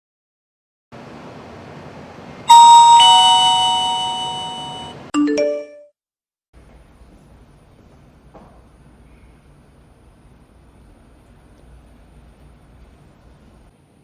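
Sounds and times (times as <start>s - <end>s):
two-note ding-dong chime: 2.5s - 5.9s.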